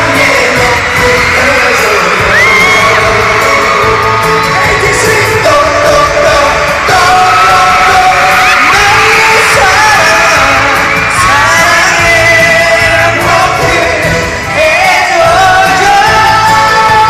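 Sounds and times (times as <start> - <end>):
backing music: 0.0 - 17.0
fans screaming and cheering: 0.0 - 17.0
man singing pop song: 0.0 - 17.0.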